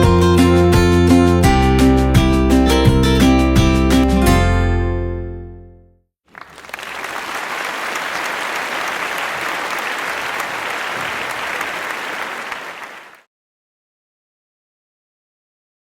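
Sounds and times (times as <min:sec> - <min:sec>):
crowd applauding: 0:06.3 - 0:13.3.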